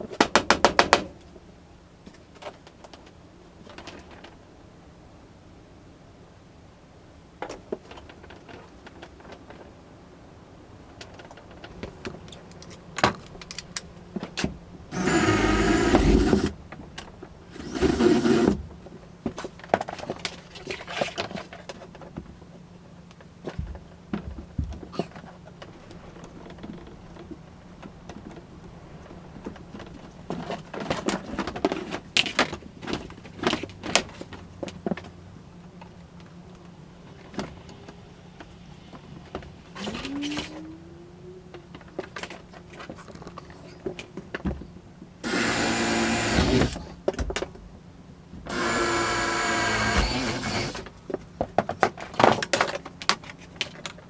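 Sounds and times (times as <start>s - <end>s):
cordless power drill whining: 14.9s - 16.6s, 17.4s - 18.6s, 45.2s - 46.9s, 48.5s - 50.9s.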